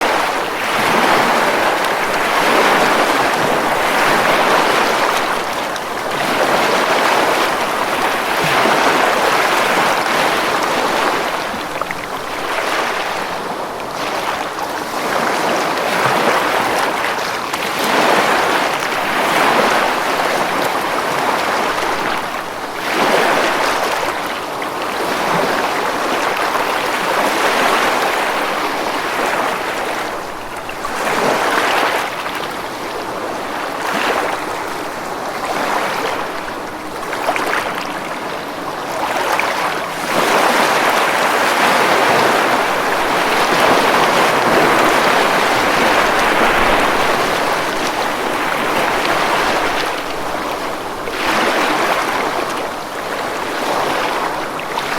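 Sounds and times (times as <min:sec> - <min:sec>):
ocean waves breaking on beach: 0:00.0 - 0:54.9.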